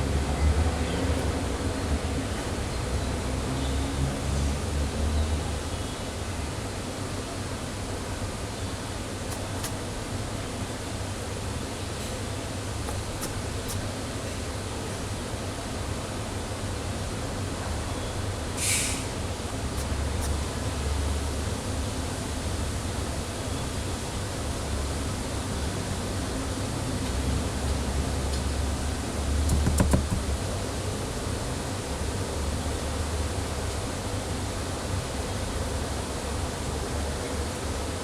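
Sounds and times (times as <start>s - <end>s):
microphone hiss: 8.6s - 17.3s
sharp hissy burst: 9.3s - 10.1s, 12.9s - 14.1s.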